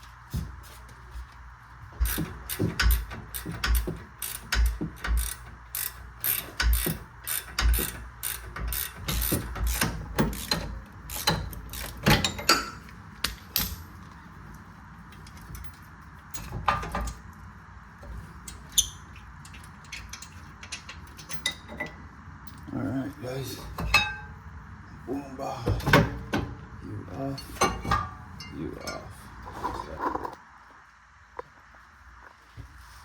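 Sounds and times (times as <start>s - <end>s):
ratchet wrench clicking: 2.0s - 13.8s.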